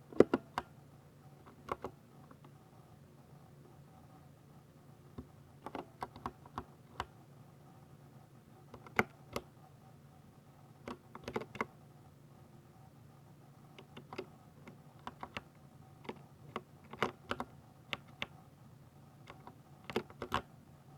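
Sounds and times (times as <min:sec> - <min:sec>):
mechanical keyboard key clicks: 0:10.9 - 0:11.7, 0:16.1 - 0:18.3.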